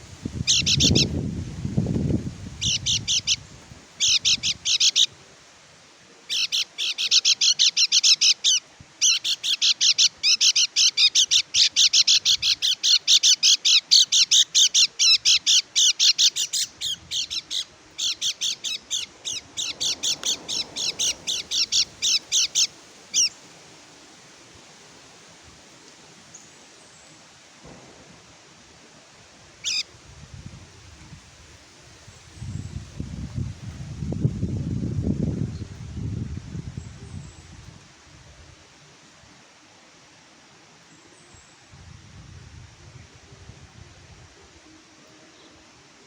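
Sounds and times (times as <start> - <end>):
bird singing high chattering song: 0.4 - 1.2, 2.6 - 5.1, 6.3 - 23.4, 29.6 - 29.9.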